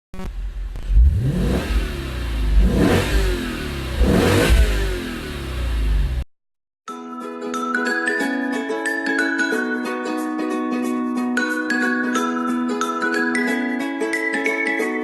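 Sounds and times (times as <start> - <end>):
car engine revving: 0.2 - 6.2.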